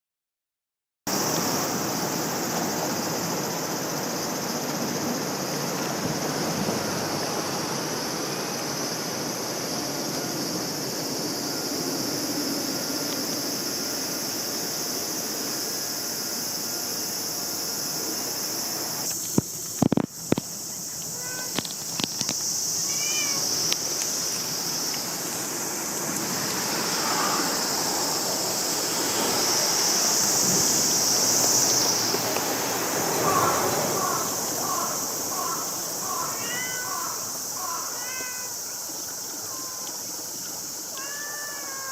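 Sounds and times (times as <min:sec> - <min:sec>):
high insect-like drone: 0:01.1 - 0:41.9
steady outdoor hiss: 0:01.1 - 0:41.9
cat meowing: 0:22.8 - 0:23.5, 0:36.3 - 0:38.5, 0:40.9 - 0:41.9.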